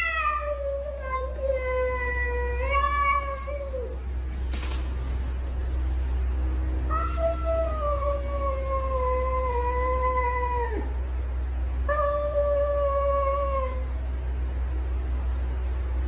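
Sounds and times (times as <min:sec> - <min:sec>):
cat yowling: 0:00.0 - 0:04.0, 0:11.9 - 0:13.9
steady low hum: 0:00.0 - 0:16.0.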